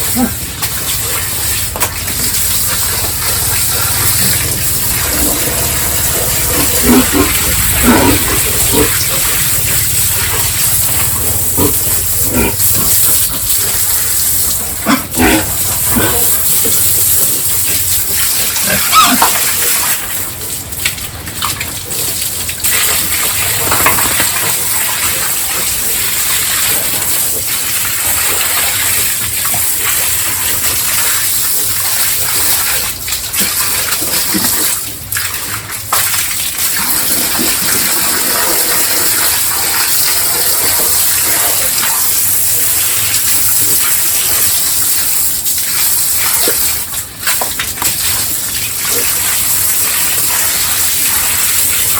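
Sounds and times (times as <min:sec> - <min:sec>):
pigs grunting: 0:00.0 - 0:20.0
running water rushing: 0:00.0 - 0:51.9.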